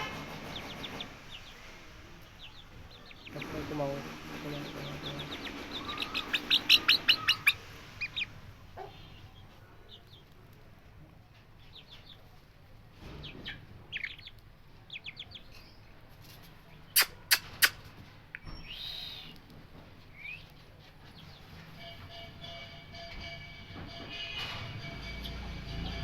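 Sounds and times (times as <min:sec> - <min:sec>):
birds chirping: 0:00.0 - 0:10.4, 0:13.1 - 0:19.4, 0:20.0 - 0:22.3
sharp clicks: 0:17.0 - 0:17.8.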